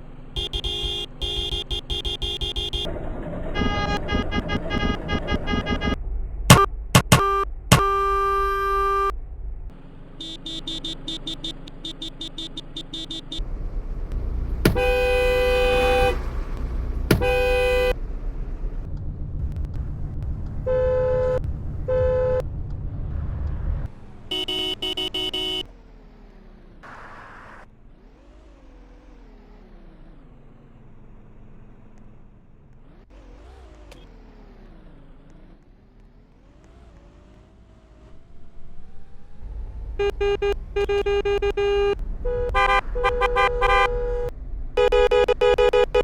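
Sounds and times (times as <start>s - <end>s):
low engine rumble: 0.0s - 46.0s
traffic noise: 0.0s - 46.0s
car horns honking: 0.3s - 9.1s, 10.2s - 18.8s, 20.7s - 22.4s, 24.3s - 25.7s, 39.8s - 46.0s.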